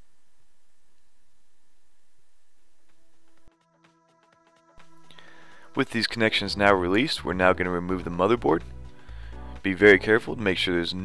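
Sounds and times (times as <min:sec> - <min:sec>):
faint background hiss: 0:00.0 - 0:03.5.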